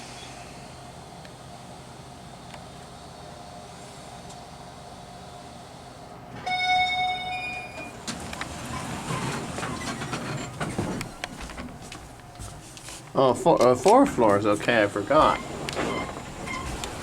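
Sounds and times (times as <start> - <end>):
elevator humming: 0.0 - 17.0
elevator doors rattling open: 6.3 - 11.9, 13.4 - 17.0
elevator arrival chime: 6.4 - 9.0, 14.7 - 17.0.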